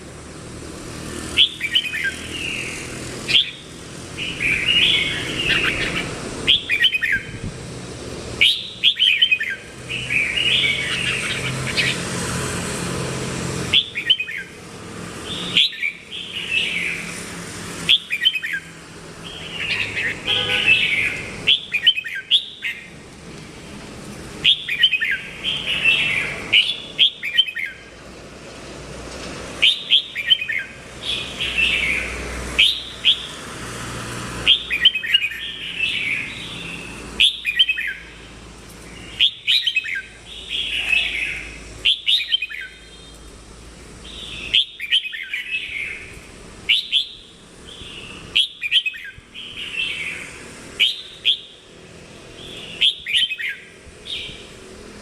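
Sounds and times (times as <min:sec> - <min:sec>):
bird singing warbled phrases: 0:01.2 - 0:07.5, 0:08.3 - 0:12.2, 0:13.6 - 0:14.6, 0:15.2 - 0:17.2, 0:17.8 - 0:23.0, 0:24.3 - 0:27.9, 0:29.6 - 0:33.4, 0:34.4 - 0:43.3, 0:43.9 - 0:54.7.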